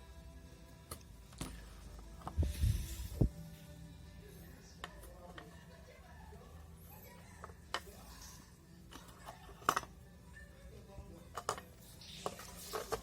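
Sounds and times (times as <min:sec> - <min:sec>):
small tools clicking and tapping: 0:08.9 - 0:10.0, 0:11.3 - 0:13.0.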